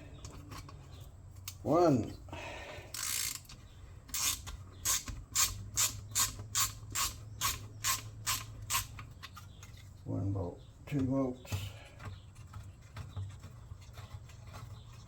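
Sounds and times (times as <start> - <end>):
ratchet wrench clicking: 2.9 - 3.5, 4.1 - 8.9.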